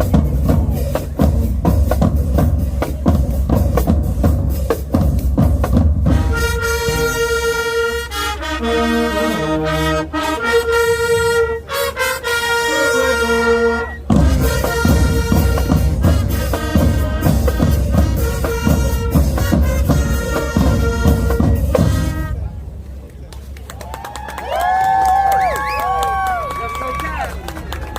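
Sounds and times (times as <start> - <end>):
marching drums beat: 0.0 - 7.6, 14.0 - 22.4
brass section holding chords: 6.0 - 22.5.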